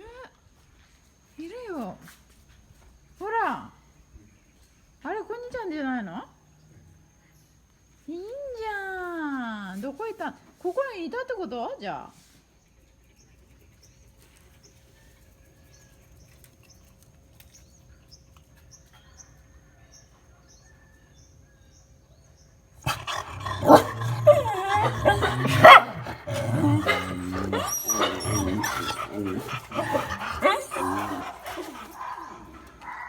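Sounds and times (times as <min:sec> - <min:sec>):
dogs barking and yipping: 0:22.8 - 0:33.0.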